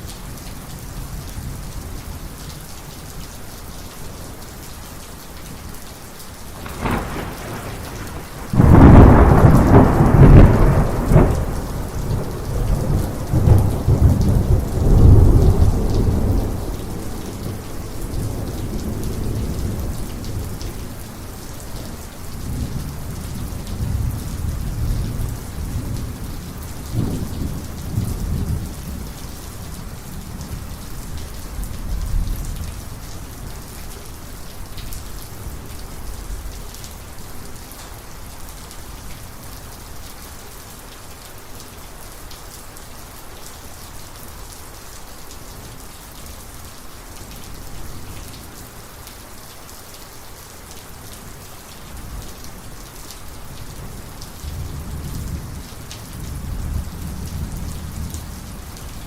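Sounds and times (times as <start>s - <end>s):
heavy rain: 0.0s - 59.0s
thunder crack and rumbling: 6.6s - 20.6s.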